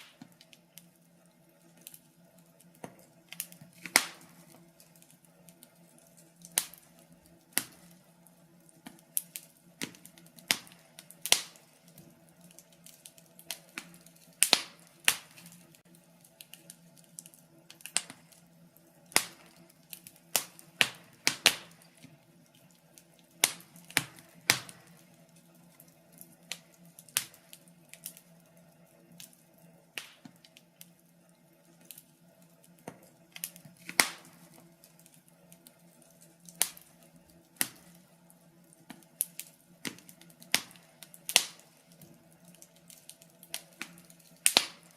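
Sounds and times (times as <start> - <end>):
faint steady hum: 0.0 - 44.9
wood fire crackling: 0.0 - 44.9.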